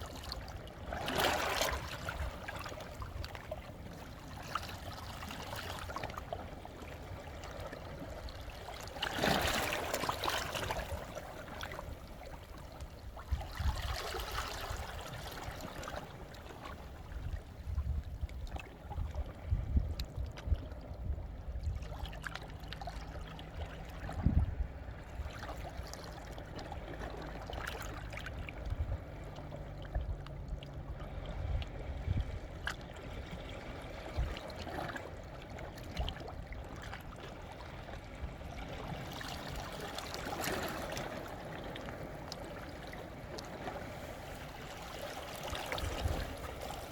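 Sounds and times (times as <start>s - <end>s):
waves washing among shore rocks: 0.1s - 7.7s, 8.3s - 12.3s, 37.4s - 46.9s.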